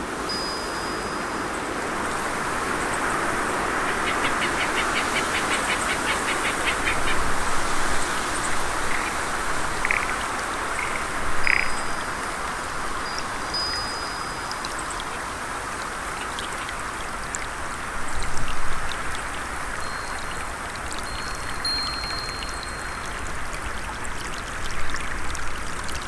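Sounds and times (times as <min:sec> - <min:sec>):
flowing stream: 0:00.0 - 0:26.0
rhythmic high chirps: 0:19.8 - 0:23.2.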